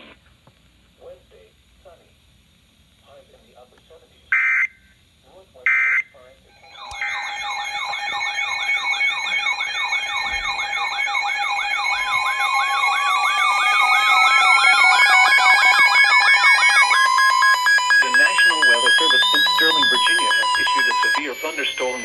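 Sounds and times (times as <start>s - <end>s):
beeping tones: 6.6s - 22.0s
electronic siren wail: 6.6s - 22.0s
steady alert tones: 6.6s - 22.0s.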